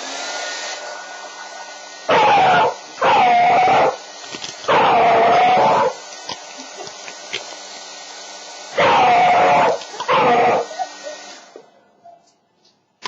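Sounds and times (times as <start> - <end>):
hair dryer hissing: 0.0 - 11.8
puppy howling: 2.1 - 4.0, 4.7 - 6.0, 8.8 - 10.7.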